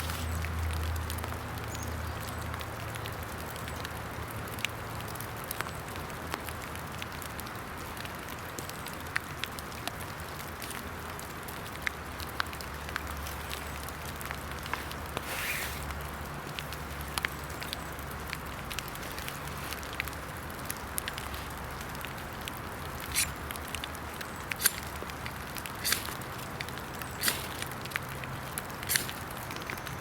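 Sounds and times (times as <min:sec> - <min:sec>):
rain hissing: 0:00.0 - 0:00.7, 0:10.6 - 0:30.0
sharp clicks: 0:23.0 - 0:29.9.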